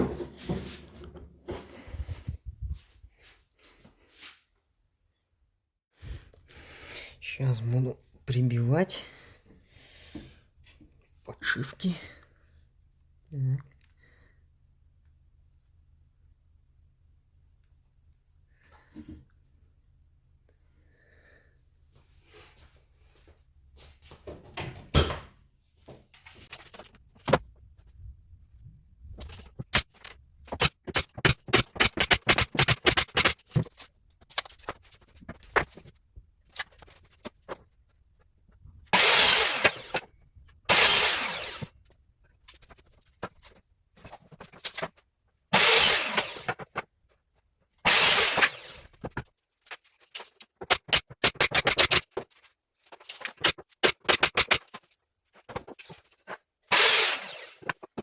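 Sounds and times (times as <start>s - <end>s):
hammer driving nails into wood: 29.8s - 33.5s, 47.9s - 48.8s, 50.6s - 52.2s, 53.4s - 54.8s.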